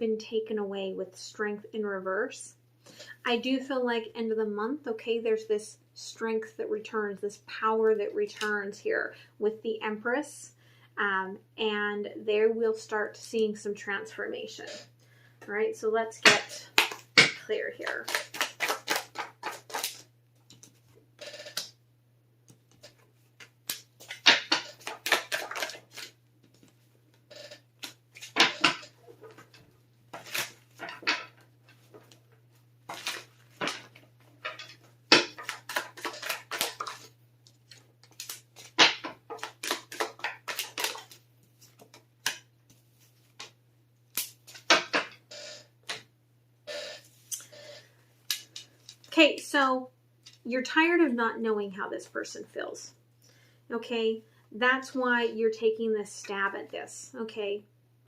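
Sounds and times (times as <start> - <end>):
cards being shuffled: 16.3 - 21.7, 22.5 - 26.9, 27.8 - 45.1.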